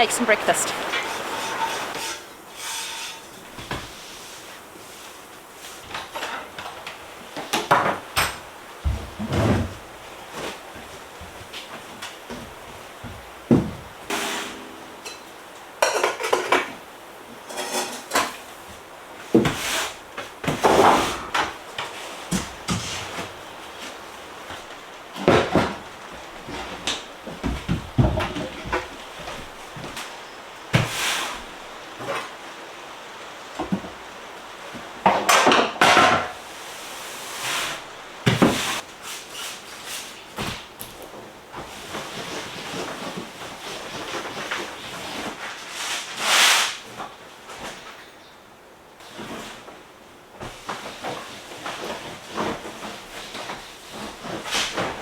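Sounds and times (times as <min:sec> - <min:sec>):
steady hiss: 0:00.0 - 0:48.0
dishes and cutlery clinking: 0:00.8 - 0:03.9, 0:14.1 - 0:16.8, 0:17.4 - 0:18.4
wooden knocks and clatters: 0:20.2 - 0:31.0.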